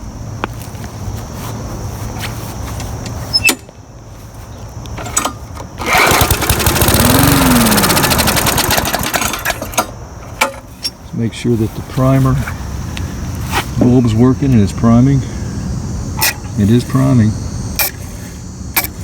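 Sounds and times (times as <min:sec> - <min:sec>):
lawn mower engine firing up: 0:04.9 - 0:15.2.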